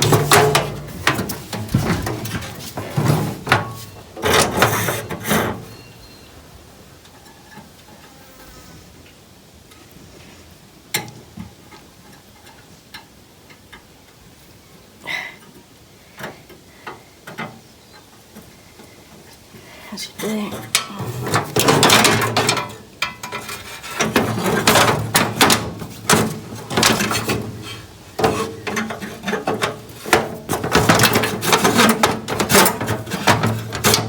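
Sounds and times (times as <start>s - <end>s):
handling rubbing and clattering: 0.0s - 6.0s, 20.1s - 34.0s.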